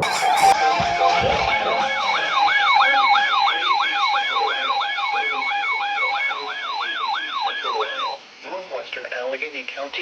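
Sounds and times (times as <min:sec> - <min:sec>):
electronic yelp alarm: 0:00.0 - 0:08.2.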